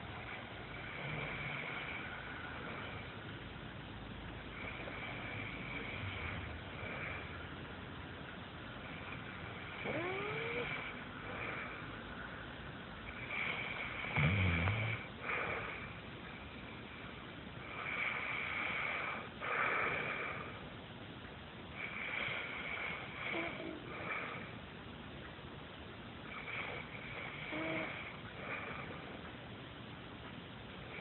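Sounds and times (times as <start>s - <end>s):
woman snoring: 8.9s - 11.8s, 13.2s - 15.8s, 21.8s - 24.5s, 26.4s - 28.9s.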